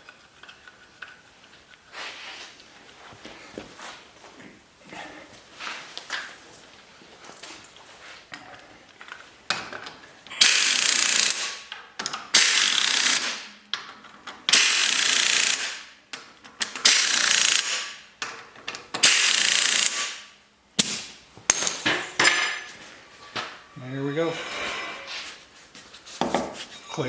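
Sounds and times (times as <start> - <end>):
ratchet wrench clicking: 10.4 - 11.6, 12.3 - 13.4, 14.5 - 15.8, 16.6 - 18.0, 19.0 - 20.2.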